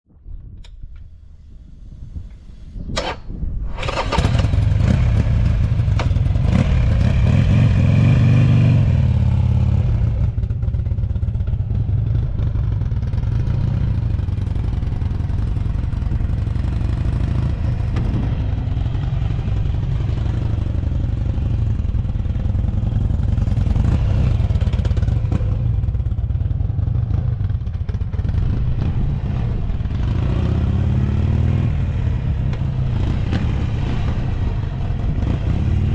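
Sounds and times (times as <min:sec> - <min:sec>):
motorcycle engine starting: 0:00.5 - 0:30.2
motorcycle engine rumbling idle: 0:03.8 - 0:16.7, 0:17.8 - 0:30.0.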